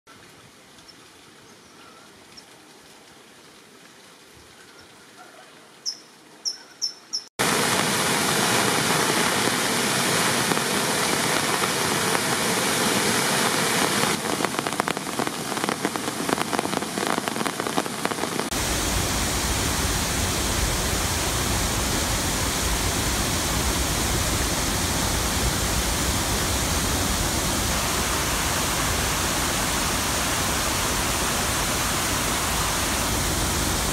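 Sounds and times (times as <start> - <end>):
creek water rushing: 7.4 - 33.9.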